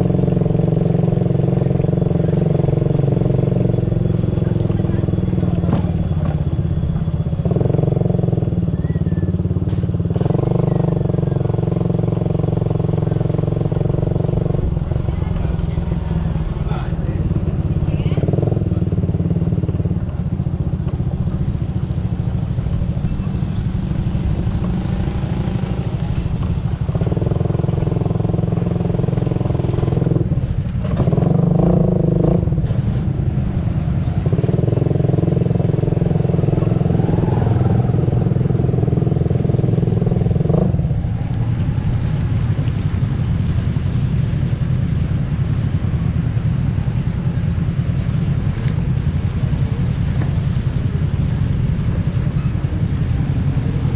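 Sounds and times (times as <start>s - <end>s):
higher engine drone: 0.0s - 53.9s
motorcycle engine rumbling: 0.0s - 53.9s.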